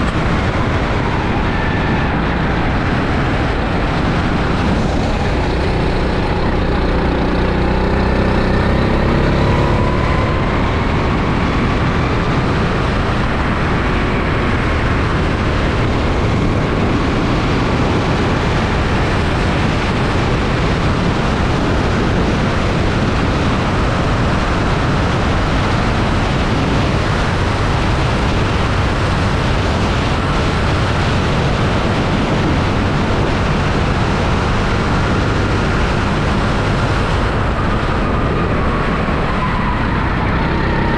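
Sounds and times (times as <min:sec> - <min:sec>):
go-kart engine: 0:00.0 - 0:40.9
wind and road noise: 0:00.0 - 0:40.9.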